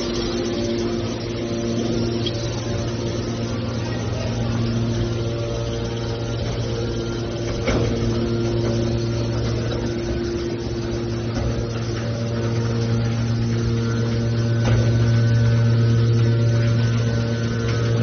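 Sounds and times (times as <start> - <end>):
baler machine hum: 0.0 - 18.0.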